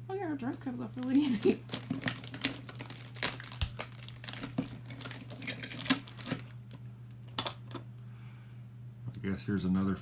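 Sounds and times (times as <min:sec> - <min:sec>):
steady low hum: 0:00.0 - 0:10.0
hands rummaging plastic toys: 0:00.9 - 0:06.6.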